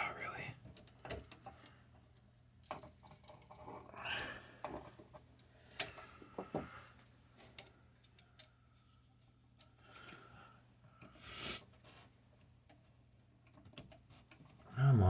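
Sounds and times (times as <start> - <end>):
wire and tools clicking and scraping: 0.6 - 3.9, 4.6 - 6.1, 7.0 - 10.2, 12.3 - 14.6.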